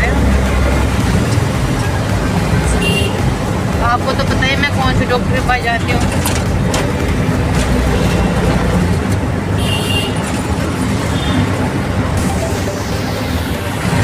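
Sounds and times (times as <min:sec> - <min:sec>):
auto-rickshaw engine rumble: 0:00.0 - 0:14.0
road noise: 0:00.0 - 0:14.0.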